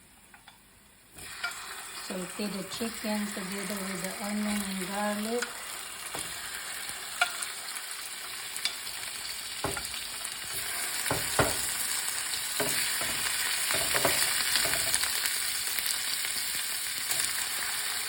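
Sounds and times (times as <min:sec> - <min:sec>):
chicken sizzling in a pan: 0:00.2 - 0:18.0.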